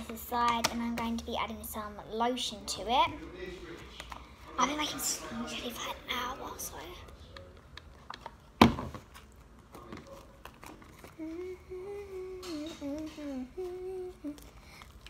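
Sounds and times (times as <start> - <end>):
person humming a tune: 11.1 - 14.6.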